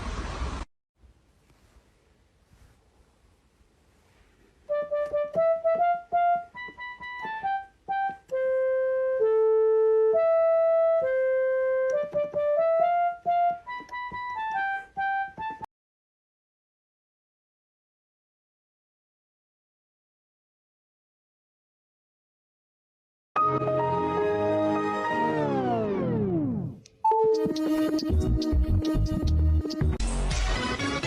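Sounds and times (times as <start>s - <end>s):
simple keyboard melody: 4.7s - 15.7s, 23.4s - 30.0s.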